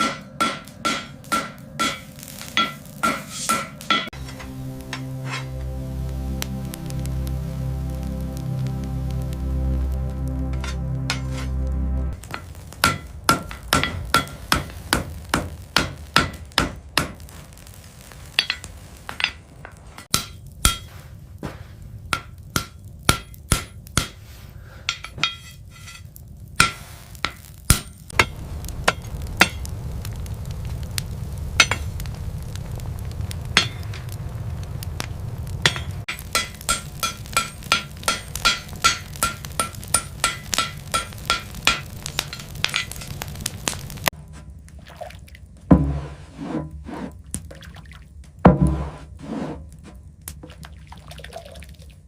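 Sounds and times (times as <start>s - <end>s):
hammer striking steel on anvil: 0.0s - 5.6s, 10.5s - 11.6s, 12.3s - 17.2s, 18.4s - 20.9s, 22.1s - 24.2s, 24.9s - 26.0s, 26.6s - 28.3s, 35.6s - 43.2s
low steady rumble: 3.8s - 26.7s, 27.6s - 47.4s.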